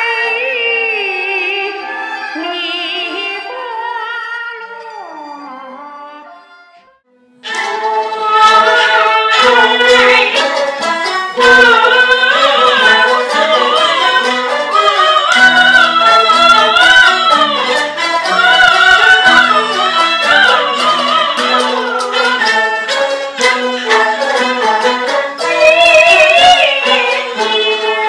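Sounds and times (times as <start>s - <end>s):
high wavering fiddle melody: 4.9s - 28.0s
low stringed notes: 7.1s - 28.0s.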